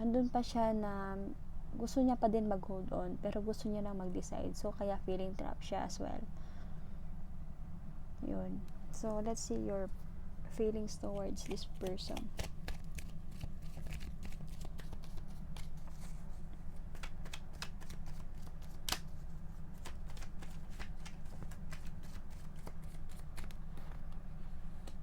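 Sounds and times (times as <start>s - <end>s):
cards being shuffled by hand: 10.9s - 25.0s.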